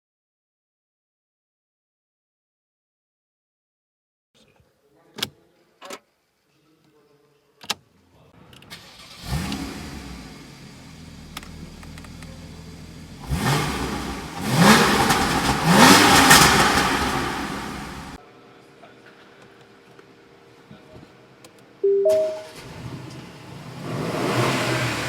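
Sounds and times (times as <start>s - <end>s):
car engine starting and idling: 8.7s - 18.2s, 22.2s - 25.0s
car engine revving: 8.9s - 18.2s, 22.4s - 25.0s.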